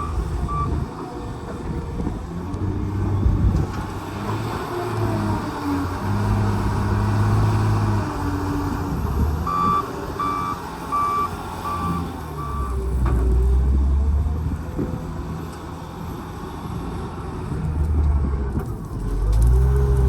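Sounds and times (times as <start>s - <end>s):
reversing alarm beeping: 0.0s - 0.8s, 9.5s - 12.8s
diesel engine revving: 0.0s - 20.0s.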